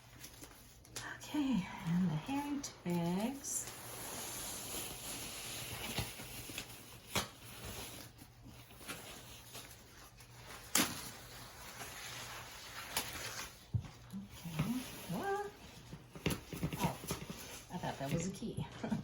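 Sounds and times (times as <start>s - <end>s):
wrapping material rustling: 0.0s - 18.4s.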